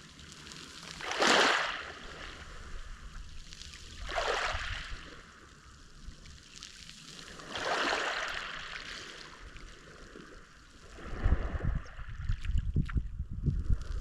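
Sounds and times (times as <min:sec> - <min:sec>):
sea waves washing on shore: 0:00.0 - 0:12.5
wind buffeting microphone: 0:11.0 - 0:14.0.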